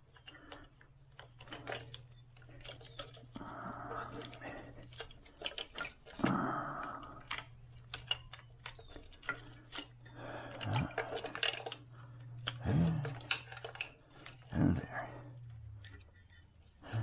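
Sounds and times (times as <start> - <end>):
steady low hum: 0.0 - 17.0
clicks taps and rustling: 7.1 - 14.5.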